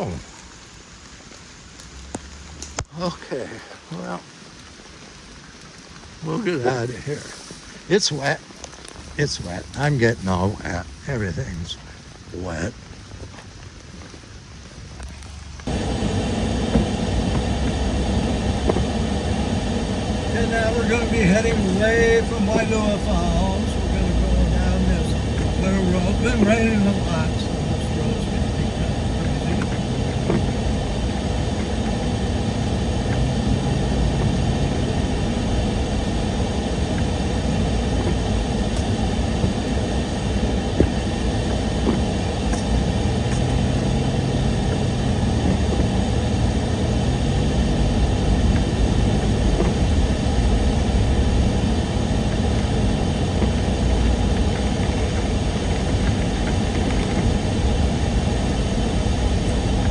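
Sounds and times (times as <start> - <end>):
road noise on wet road: 0.0 - 59.9
car engine: 14.9 - 59.9.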